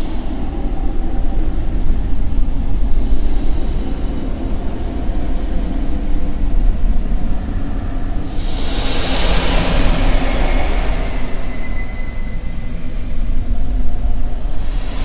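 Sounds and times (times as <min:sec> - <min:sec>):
low dark rumbling drone: 0:05.3 - 0:15.0
faint high ringing tone: 0:07.5 - 0:15.0.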